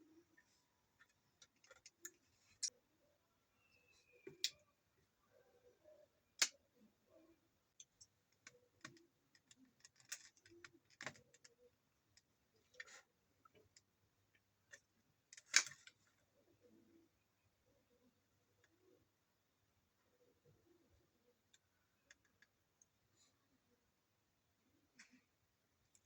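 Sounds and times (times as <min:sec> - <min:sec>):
plastic parts clicking and tapping: 0:01.0 - 0:02.7, 0:07.8 - 0:13.9, 0:14.7 - 0:16.1.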